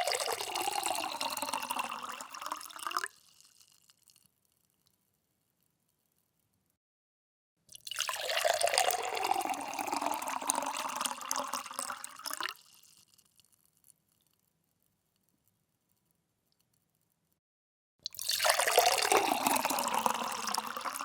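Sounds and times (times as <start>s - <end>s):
water pouring into a glass: 0.0s - 3.9s, 7.7s - 13.2s, 18.1s - 21.0s.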